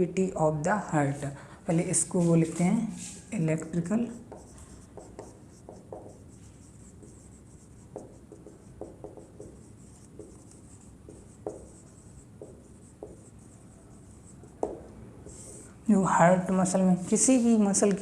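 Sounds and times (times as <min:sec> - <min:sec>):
pen scratching while writing: 0:04.0 - 0:15.6.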